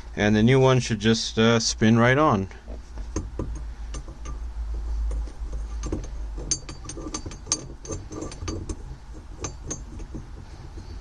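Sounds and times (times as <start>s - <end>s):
handling rustle: 2.6s - 4.3s
small metallic clicks: 2.8s - 11.0s.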